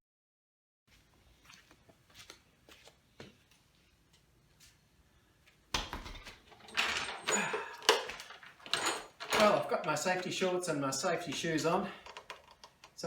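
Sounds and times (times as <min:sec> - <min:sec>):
rustling and clattering: 0:05.8 - 0:13.0.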